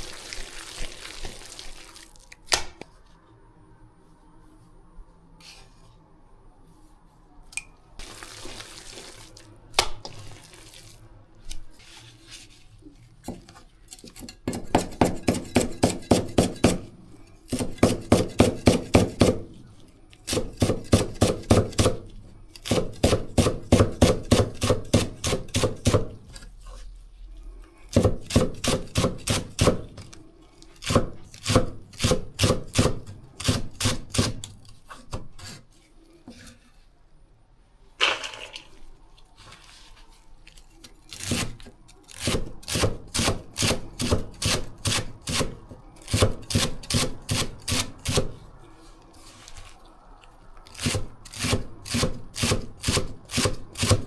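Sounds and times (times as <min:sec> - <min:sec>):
knife chopping celery on board: 0:13.3 - 0:16.9, 0:17.5 - 0:19.6, 0:20.2 - 0:26.3, 0:27.9 - 0:30.1, 0:30.8 - 0:35.6, 0:41.1 - 0:48.3, 0:50.8 - 0:54.0.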